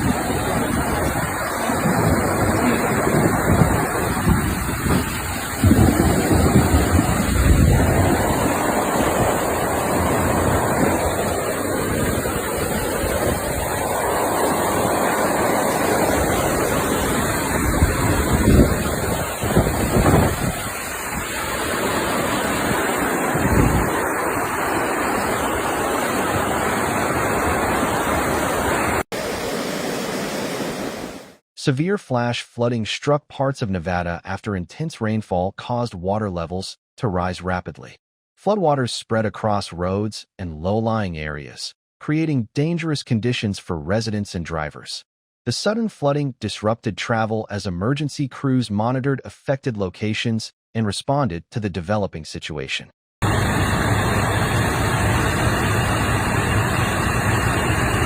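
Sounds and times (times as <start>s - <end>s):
gusts buffeting microphone: 0.0s - 31.3s
wind and water rushing: 0.0s - 31.4s, 53.2s - 58.0s.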